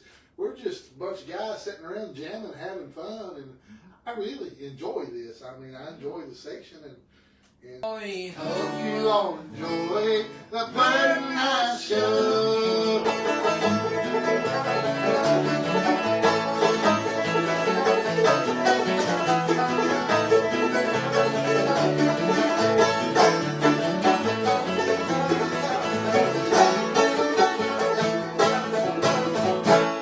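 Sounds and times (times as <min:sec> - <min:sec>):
acoustic guitar: 0:08.4 - 0:30.0
banjo picking: 0:08.4 - 0:30.0
bass line: 0:13.1 - 0:30.0.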